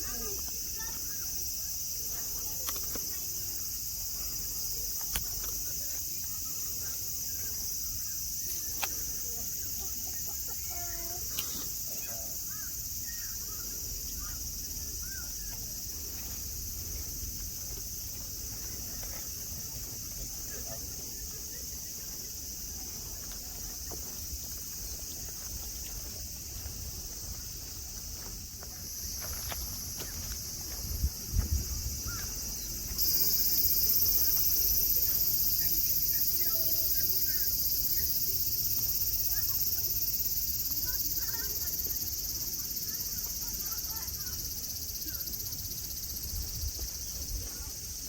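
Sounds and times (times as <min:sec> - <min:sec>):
cicadas droning: 0:00.0 - 0:48.0.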